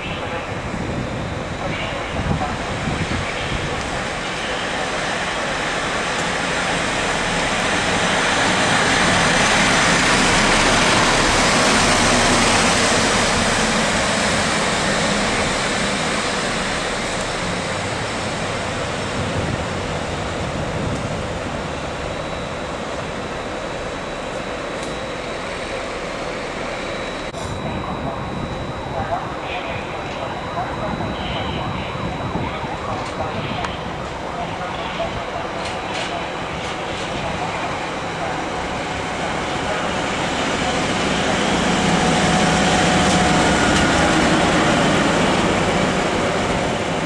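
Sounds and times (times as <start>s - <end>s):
electric locomotive rumbling: 0.0s - 47.0s.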